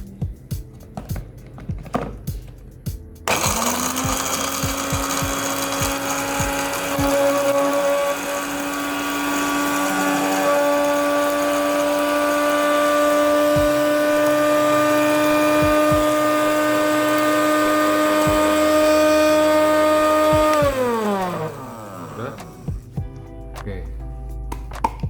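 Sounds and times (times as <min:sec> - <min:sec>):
blender grinding peanuts: 0:03.3 - 0:22.7.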